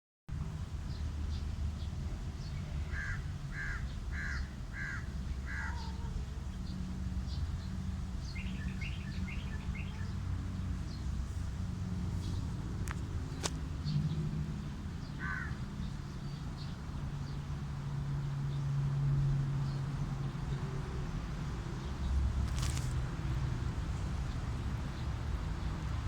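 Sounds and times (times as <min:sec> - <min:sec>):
small birds chirping: 0:00.9 - 0:11.2, 0:20.4 - 0:23.1
crow cawing: 0:02.9 - 0:06.1, 0:15.2 - 0:15.6.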